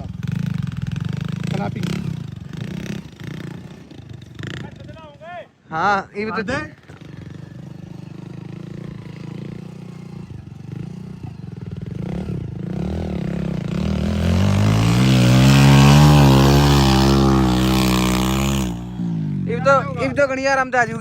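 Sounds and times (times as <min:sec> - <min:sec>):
diesel engine revving: 0:12.0 - 0:19.8.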